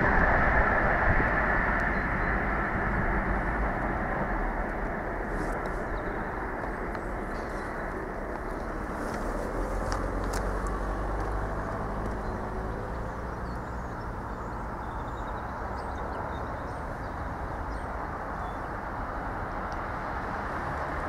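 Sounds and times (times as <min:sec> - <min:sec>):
low engine hum: 0:00.0 - 0:21.0
train rolling rumble: 0:00.0 - 0:21.0.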